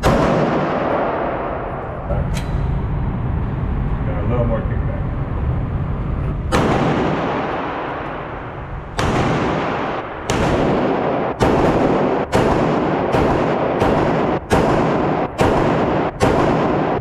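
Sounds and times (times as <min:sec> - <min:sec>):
gunshots with reverberant ring: 0:00.0 - 0:02.8, 0:06.5 - 0:17.0.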